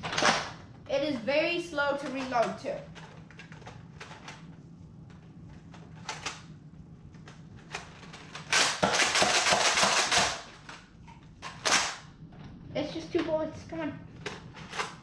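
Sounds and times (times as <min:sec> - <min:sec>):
toy blaster pumping and firing: 0:08.5 - 0:10.5.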